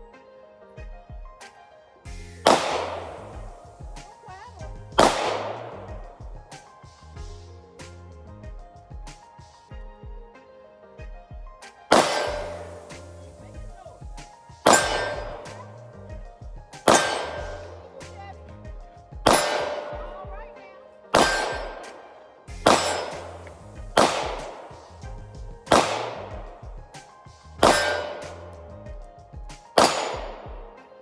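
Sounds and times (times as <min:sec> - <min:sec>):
gunshots with ringing echo: 0:02.1 - 0:04.2, 0:04.8 - 0:06.7, 0:11.9 - 0:13.8, 0:14.6 - 0:16.0, 0:16.8 - 0:18.5, 0:19.2 - 0:29.0, 0:29.6 - 0:30.8
background music with bass: 0:02.1 - 0:10.4, 0:11.0 - 0:20.6, 0:21.2 - 0:31.0.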